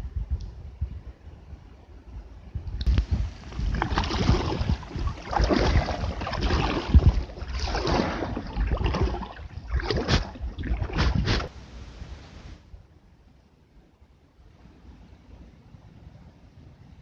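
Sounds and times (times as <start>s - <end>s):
low microphone rumble: 0.0s - 13.4s
paddle splashing in water: 2.9s - 11.6s.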